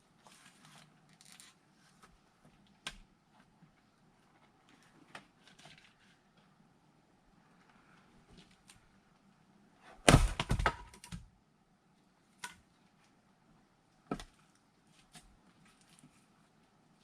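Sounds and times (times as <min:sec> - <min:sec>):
axe splitting firewood: 0:10.0 - 0:11.3.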